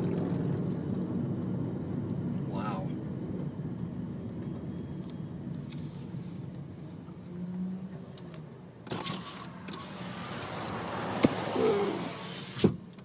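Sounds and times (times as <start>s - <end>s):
steady low rumble: 0.0s - 7.4s
broad hiss: 11.3s - 12.7s.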